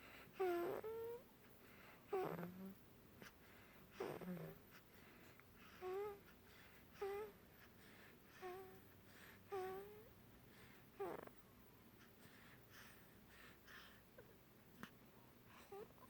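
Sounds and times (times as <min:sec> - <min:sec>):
baby snoring: 0:00.3 - 0:01.2, 0:02.1 - 0:04.8, 0:05.6 - 0:11.4
baby snuffling snort: 0:02.1 - 0:04.9, 0:10.6 - 0:11.4.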